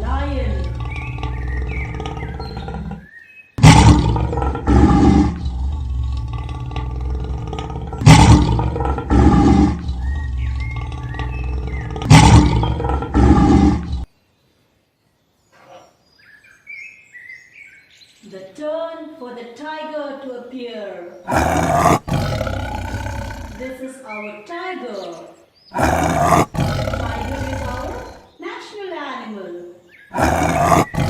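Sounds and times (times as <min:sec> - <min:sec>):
lion roars: 0:00.0 - 0:14.1, 0:21.3 - 0:23.7, 0:25.8 - 0:28.2, 0:30.1 - 0:31.0.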